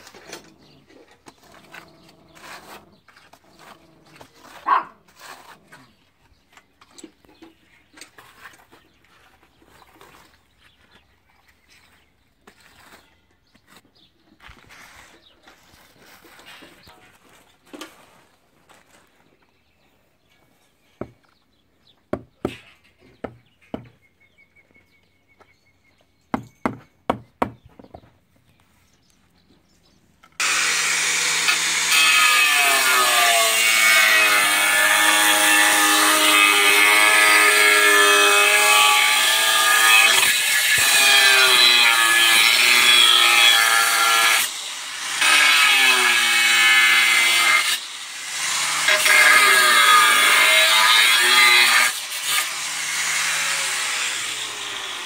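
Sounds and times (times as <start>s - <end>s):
power saw cutting: 30.4s - 55.0s.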